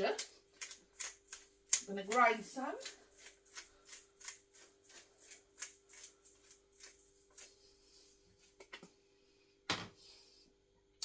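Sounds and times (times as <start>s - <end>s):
pepper grinder grinding: 0.0s - 7.5s.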